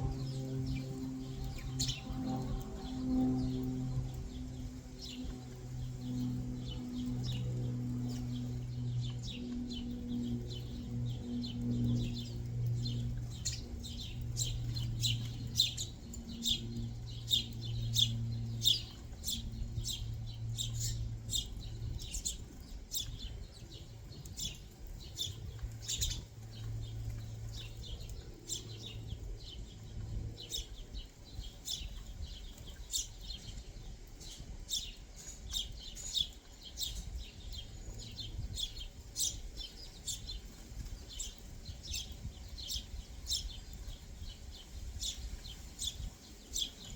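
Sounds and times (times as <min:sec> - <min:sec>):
low steady hum: 0:00.0 - 0:46.9
small birds chirping: 0:00.0 - 0:46.9.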